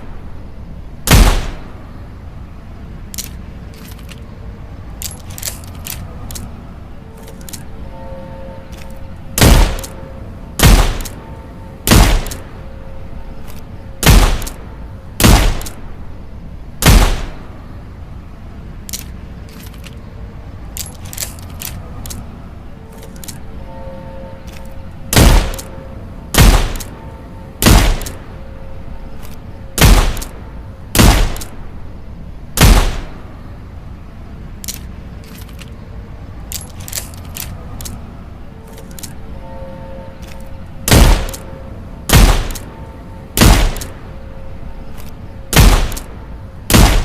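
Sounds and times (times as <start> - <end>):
revolver gunshots: 1.1 - 1.7, 9.4 - 10.0, 10.6 - 11.2, 11.9 - 12.5, 14.0 - 14.6, 15.2 - 15.8, 16.8 - 17.4, 25.1 - 25.7, 26.4 - 27.0, 27.6 - 28.3, 29.8 - 30.4, 31.0 - 31.6, 32.6 - 33.2, 40.9 - 41.4, 42.1 - 42.7, 43.4 - 44.0, 45.5 - 46.1, 46.7 - 47.0
light clicks: 34.6 - 35.8.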